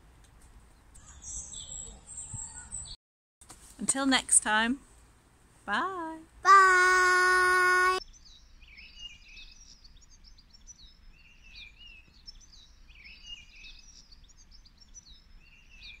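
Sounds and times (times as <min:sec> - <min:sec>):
songbirds chirping: 0:00.6 - 0:03.0, 0:05.6 - 0:16.0.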